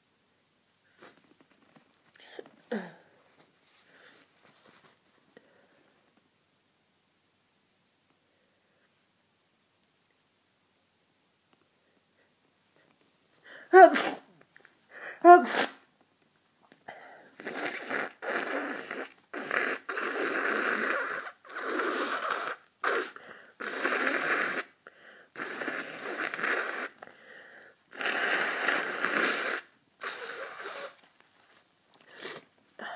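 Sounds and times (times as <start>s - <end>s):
person breathing heavily and wheezing: 2.1s - 4.3s, 12.2s - 13.9s, 14.9s - 15.4s, 23.1s - 23.6s, 24.8s - 25.4s, 27.0s - 27.8s.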